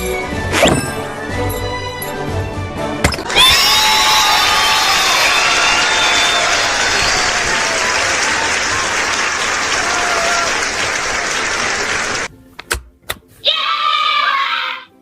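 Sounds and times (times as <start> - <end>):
children cheering and clapping: 3.2 - 12.3
children shouting: 3.3 - 12.3, 13.4 - 14.9.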